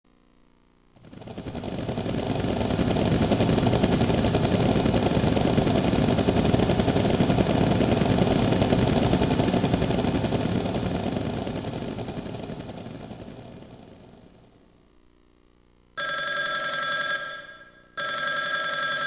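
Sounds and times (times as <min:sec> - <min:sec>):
synthesized rattling rumble: 0:01.0 - 0:14.6.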